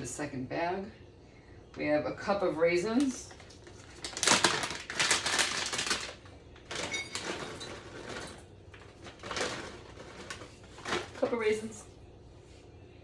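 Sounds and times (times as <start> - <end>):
packaging and raisins rattling: 3.0 - 11.7.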